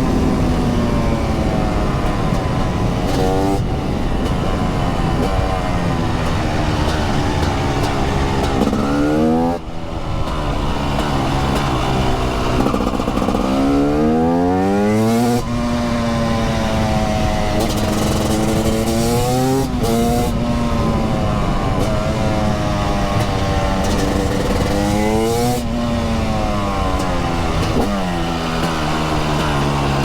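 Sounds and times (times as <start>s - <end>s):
two-stroke motorcycle engine revving: 0.0s - 30.0s.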